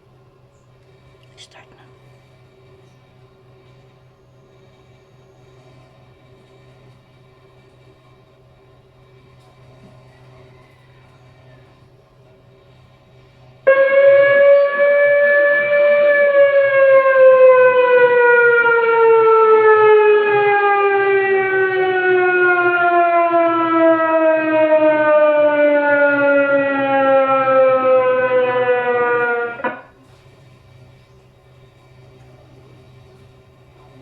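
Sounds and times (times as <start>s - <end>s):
siren falling in pitch: 13.7s - 29.9s.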